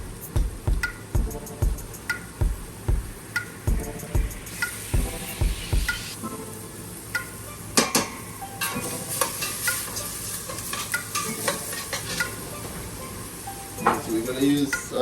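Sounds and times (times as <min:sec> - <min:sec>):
oil sizzling: 0:02.7 - 0:06.2, 0:08.4 - 0:14.4.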